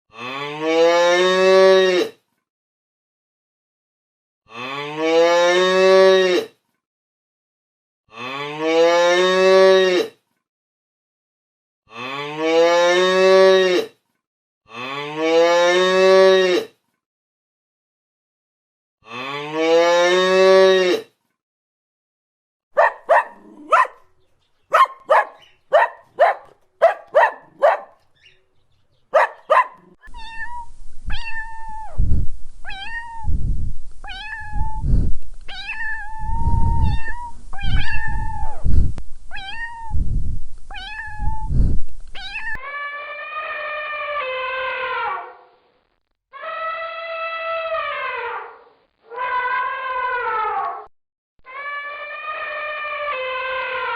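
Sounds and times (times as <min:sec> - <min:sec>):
cow mooing: 0:00.1 - 0:02.0, 0:22.8 - 0:24.0
cat meowing: 0:29.2 - 0:32.0, 0:32.6 - 0:33.3, 0:34.1 - 0:34.8, 0:35.5 - 0:38.6, 0:39.3 - 0:40.0, 0:40.7 - 0:41.5, 0:42.2 - 0:45.2.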